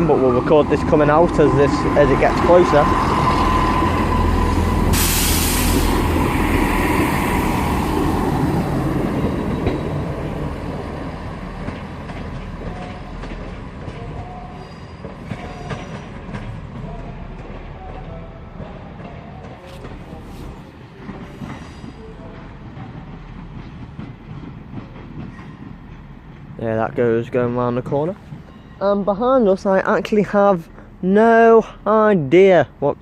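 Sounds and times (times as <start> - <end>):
diesel train pulling away: 0.0 - 31.0
hiss burst: 4.9 - 7.7.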